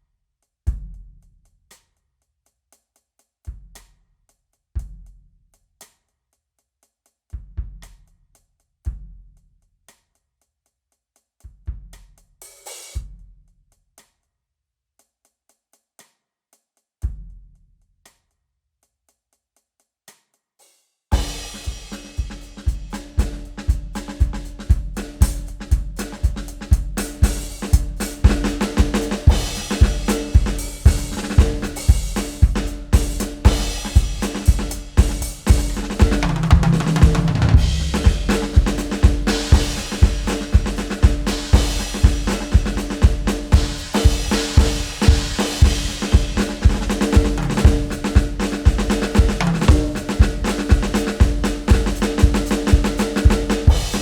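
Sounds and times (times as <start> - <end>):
drum kit beat: 21.1 - 54.0.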